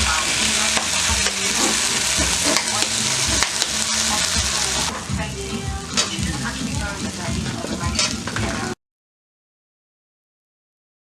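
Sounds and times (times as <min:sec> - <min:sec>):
utensil clicking against pan: 0:00.0 - 0:04.9, 0:05.9 - 0:06.4, 0:07.4 - 0:08.6
food sizzling in hot oil: 0:00.0 - 0:08.8.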